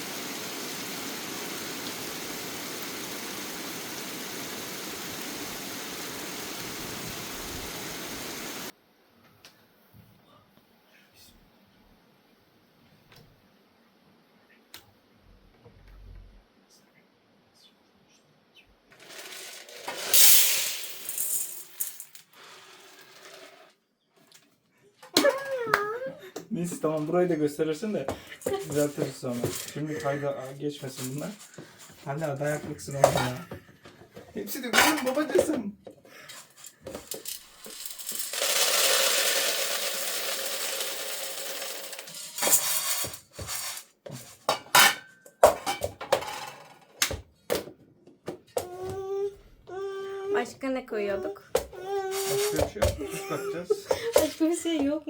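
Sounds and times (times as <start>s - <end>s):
steady rushing hiss: 0.0s - 8.7s, 26.8s - 33.0s
small hard objects rattling: 19.0s - 23.7s, 30.8s - 33.4s, 36.3s - 43.9s
pots and utensils clinking: 30.8s - 33.5s, 34.7s - 35.6s, 44.4s - 46.9s.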